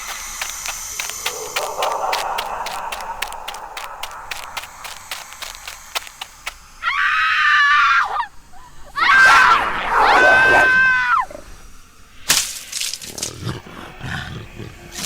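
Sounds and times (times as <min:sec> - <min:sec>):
faint clicks: 0:00.0 - 0:06.6
high-pitched human screams: 0:06.8 - 0:08.3, 0:09.0 - 0:11.3.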